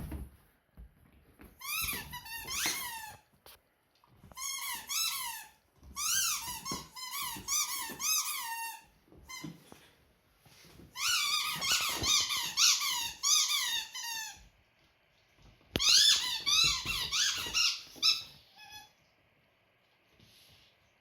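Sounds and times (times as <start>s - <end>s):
rubber squeaky toy squeaking: 1.6s - 3.2s, 4.4s - 9.5s, 11.0s - 14.4s, 15.8s - 18.9s.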